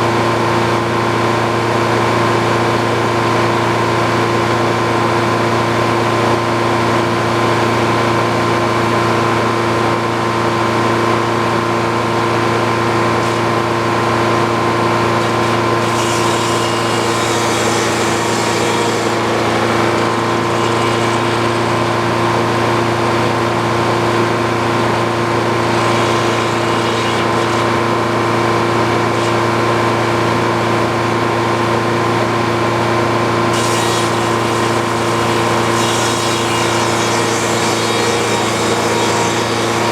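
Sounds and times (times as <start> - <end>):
sawmill machine drone: 0.0 - 39.9
saw blade cutting wood: 11.2 - 31.6, 33.4 - 39.9.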